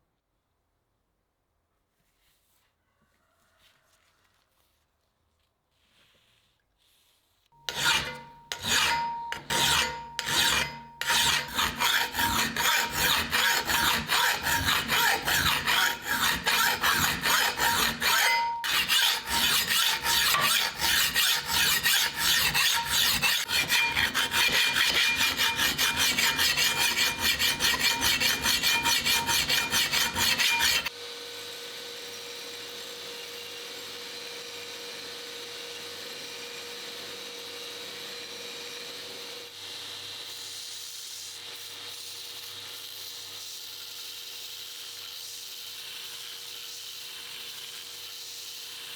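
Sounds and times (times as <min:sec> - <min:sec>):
file rasping on steel: 0:07.6 - 0:30.9.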